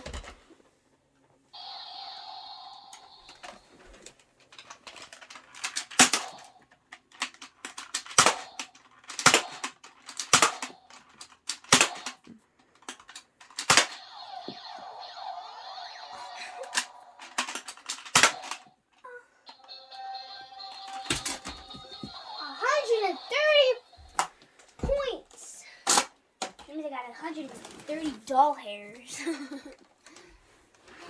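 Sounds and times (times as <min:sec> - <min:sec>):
foam dart blaster clacks: 0:11.5 - 0:12.3.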